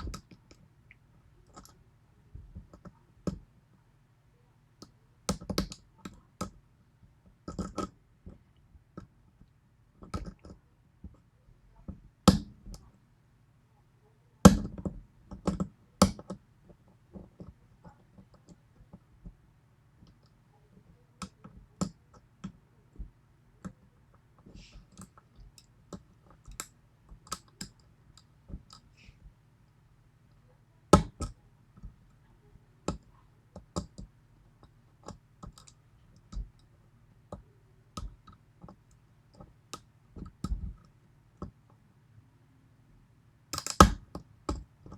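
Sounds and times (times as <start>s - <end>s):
lock pick clicking in lock: 43.6s - 44.1s.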